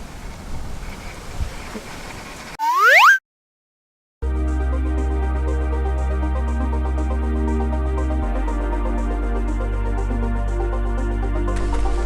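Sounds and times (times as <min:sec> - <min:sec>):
wind buffeting microphone: 0:00.0 - 0:02.4.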